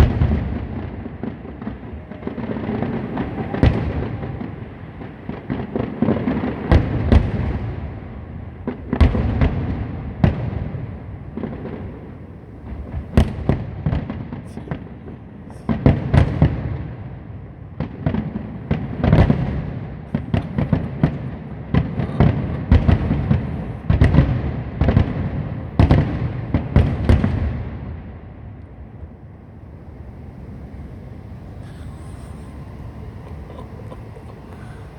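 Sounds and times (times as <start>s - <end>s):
continuous low rumble: 0.0s - 34.9s
fireworks banging: 0.0s - 34.9s.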